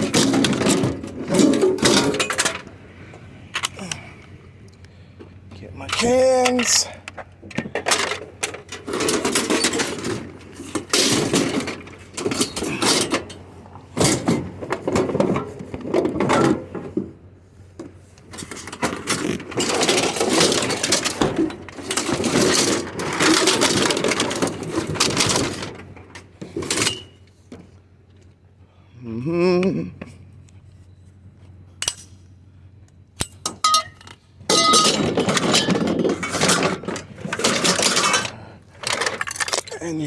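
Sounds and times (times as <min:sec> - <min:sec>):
scrap and cans clattering: 0:00.0 - 0:02.7, 0:07.6 - 0:13.4, 0:18.3 - 0:27.1, 0:33.5 - 0:39.8.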